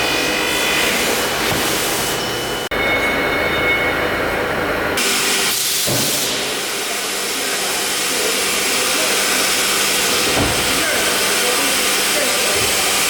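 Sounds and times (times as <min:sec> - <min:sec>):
cnc router cutting wood: 0:06.6 - 0:13.0.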